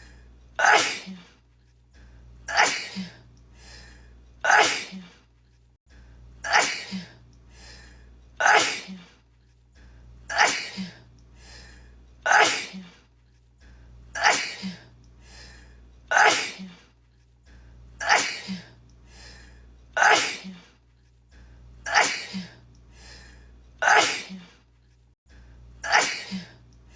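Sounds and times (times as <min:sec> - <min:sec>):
low background hum: 0:00.0 - 0:26.9
woman sneezing: 0:00.6 - 0:01.3, 0:02.5 - 0:03.2, 0:04.5 - 0:05.2, 0:06.5 - 0:07.1, 0:08.4 - 0:09.1, 0:10.3 - 0:11.0, 0:12.3 - 0:13.0, 0:14.2 - 0:14.8, 0:16.1 - 0:16.8, 0:18.0 - 0:18.7, 0:20.0 - 0:20.7, 0:21.9 - 0:22.6, 0:23.8 - 0:24.5, 0:25.8 - 0:26.5.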